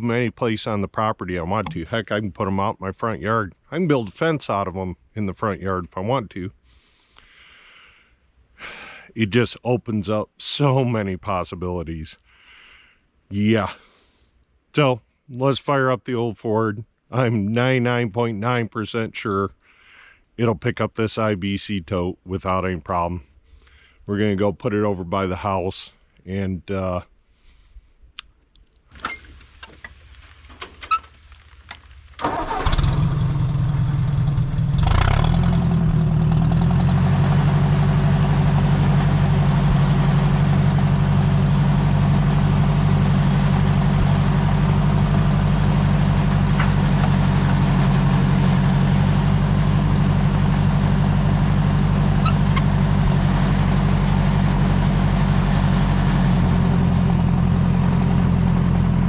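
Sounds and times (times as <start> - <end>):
tractor engine starting and running: 28.9 - 59.0.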